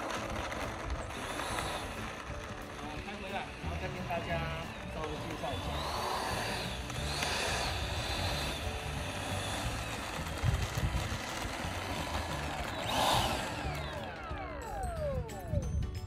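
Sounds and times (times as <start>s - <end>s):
model jet electric fans whining: 0.0s - 16.0s
wind rumble on microphone: 6.6s - 16.0s.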